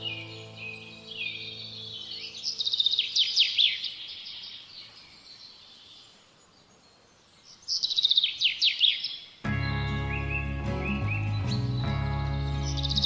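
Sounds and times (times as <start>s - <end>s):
music: 0.0s - 2.5s, 9.5s - 13.0s
songbird singing: 0.0s - 13.0s.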